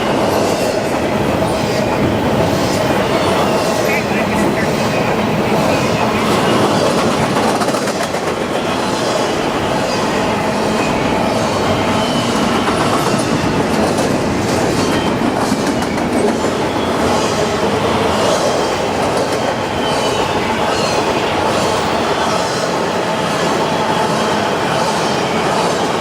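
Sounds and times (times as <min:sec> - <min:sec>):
freight train passing: 0:00.0 - 0:26.0
wheels clacking over rail joints: 0:00.0 - 0:26.0.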